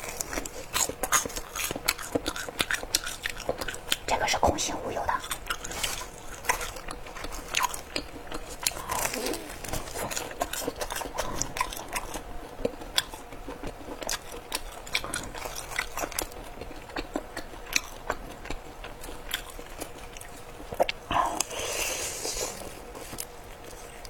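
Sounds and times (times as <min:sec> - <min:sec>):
crunching and chewing food: 0:00.0 - 0:24.0.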